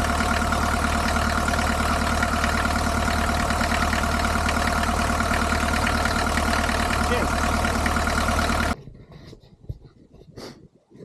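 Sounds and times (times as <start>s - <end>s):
diesel engine idling: 0.0s - 8.8s.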